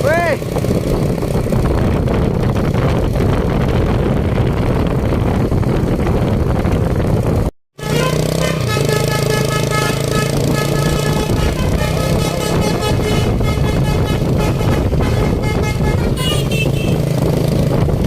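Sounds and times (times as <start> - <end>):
bus engine and road noise: 0.0 - 18.0
musical bus horn playing tune: 7.8 - 17.1.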